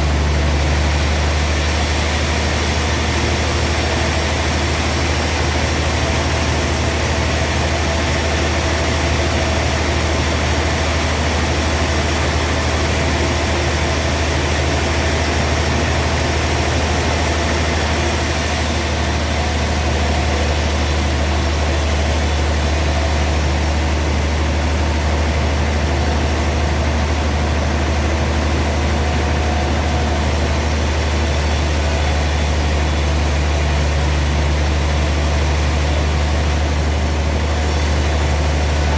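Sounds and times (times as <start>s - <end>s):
sawmill machinery droning: 0.0s - 38.9s.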